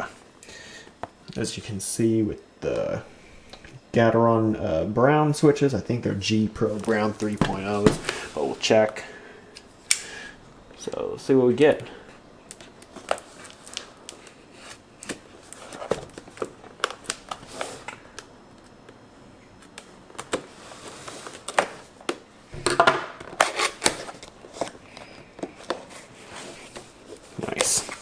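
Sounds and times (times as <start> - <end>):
cardboard packaging handled: 6.6 - 8.6, 12.5 - 18.2.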